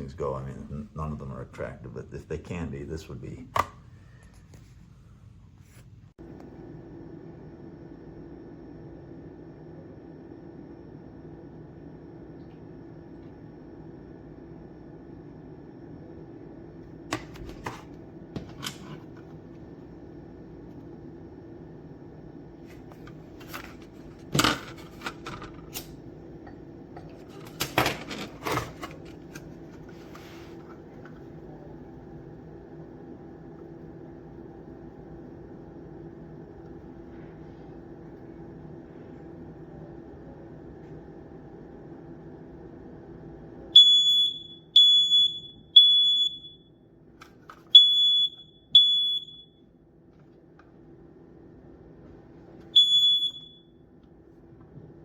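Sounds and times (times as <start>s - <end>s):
high-pitched alarm beeps: 43.8s - 46.7s, 47.8s - 49.6s, 52.8s - 53.7s.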